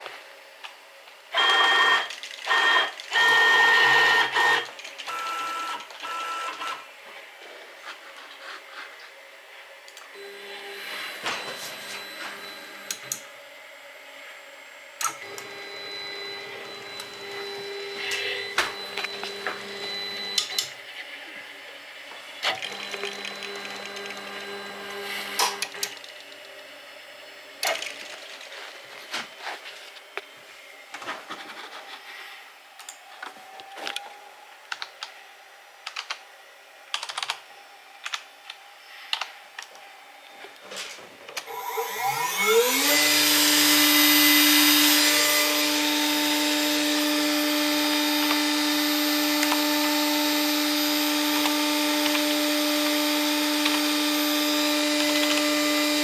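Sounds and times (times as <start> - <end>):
stepper motors whining: 1.3 - 6.8, 10.2 - 13.3, 15.0 - 28.2, 41.4 - 56.0.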